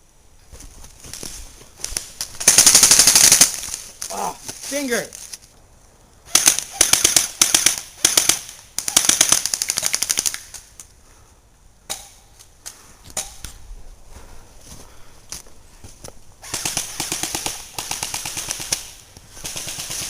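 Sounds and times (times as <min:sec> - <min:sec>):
airsoft guns firing: 0:02.0 - 0:03.8, 0:06.3 - 0:10.6, 0:16.4 - 0:20.0.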